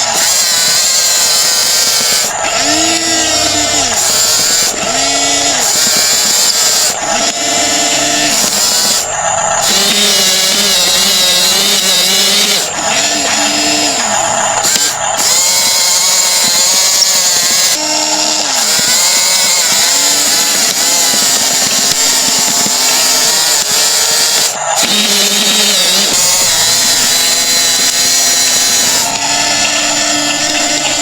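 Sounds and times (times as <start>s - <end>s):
model bulldozer motor whine: 0.0s - 31.0s.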